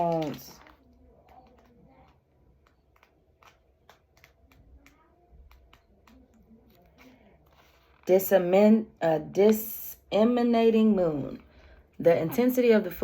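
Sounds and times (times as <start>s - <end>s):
faint clicks and taps: 0.0s - 8.1s.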